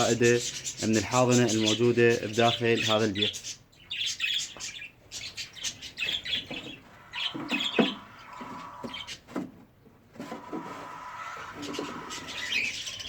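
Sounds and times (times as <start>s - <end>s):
birds chirping: 0.0s - 13.0s
wood scraping: 6.4s - 12.9s.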